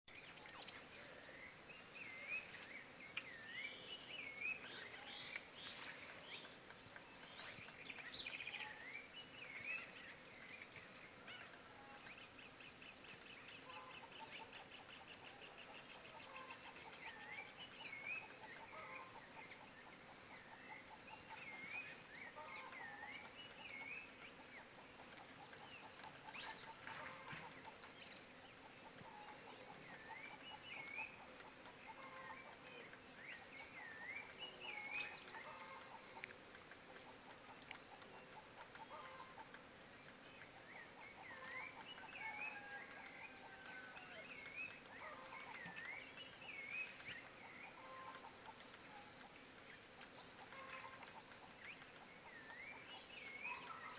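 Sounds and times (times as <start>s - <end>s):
high insect drone: 0.1s - 53.9s.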